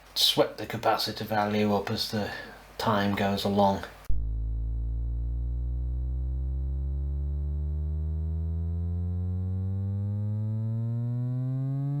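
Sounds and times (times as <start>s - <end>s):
buzzy tone rising in pitch: 4.1s - 12.0s.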